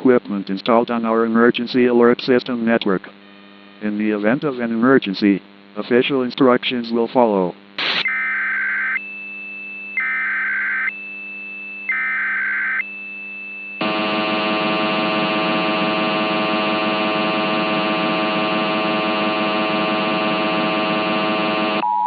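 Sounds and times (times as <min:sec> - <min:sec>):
buzzy steady alarm tone: 0:07.6 - 0:21.8.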